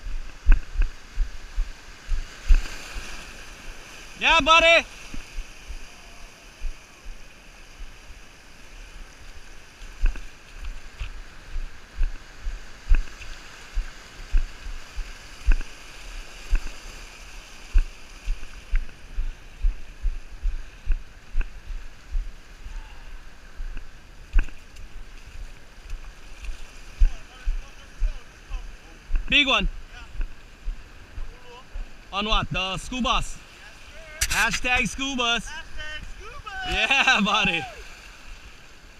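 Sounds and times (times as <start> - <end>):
dull low thumps: 0.0 - 2.7, 11.5 - 13.1, 13.8 - 15.7, 17.7 - 22.4, 27.0 - 32.6
wind and water noise: 0.0 - 38.9.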